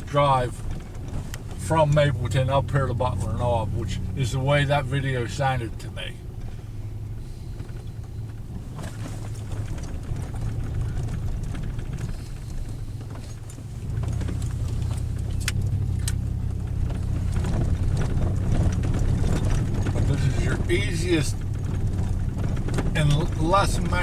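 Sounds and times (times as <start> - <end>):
vehicle engine rumble: 0.0 - 24.0
short knocks and rattles: 7.3 - 24.0.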